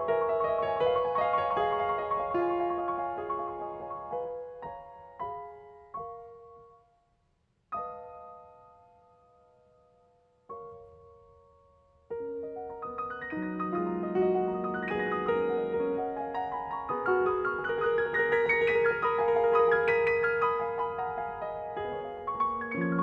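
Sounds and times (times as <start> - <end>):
solo piano: 0.0 - 23.0.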